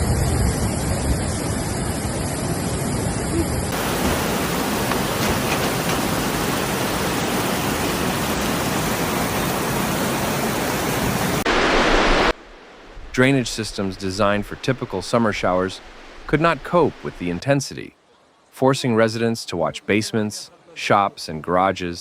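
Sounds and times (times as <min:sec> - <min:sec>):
floodwater rushing: 0:01.6 - 0:17.4.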